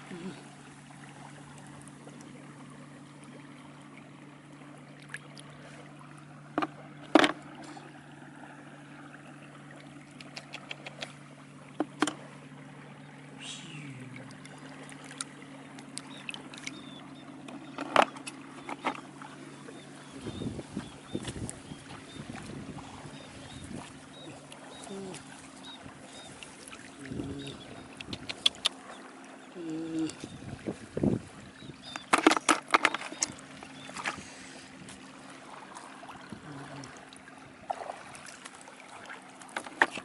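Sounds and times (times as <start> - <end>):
low mechanical motor hum: 0.0 - 40.0.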